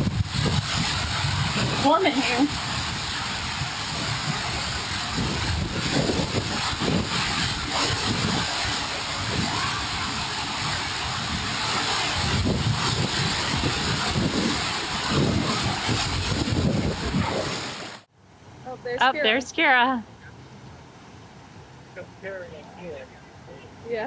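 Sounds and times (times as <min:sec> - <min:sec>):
water rushing in a slide tube: 0:00.0 - 0:18.1.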